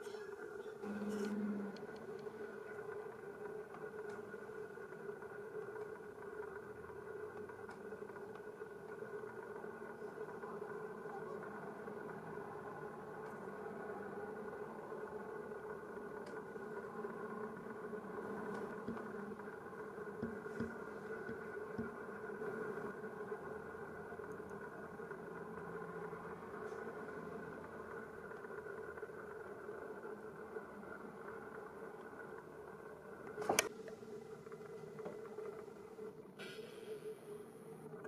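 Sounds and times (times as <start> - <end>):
faint clicks: 7.2 - 10.3.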